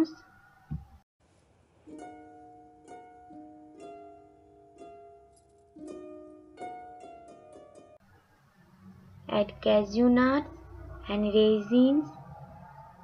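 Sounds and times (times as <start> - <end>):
soft plucked background music: 1.8 - 8.0.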